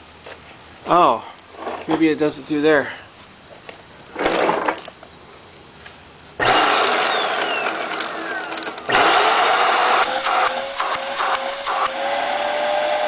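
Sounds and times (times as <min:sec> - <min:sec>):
vacuum cleaner motor running: 0:06.4 - 0:13.0.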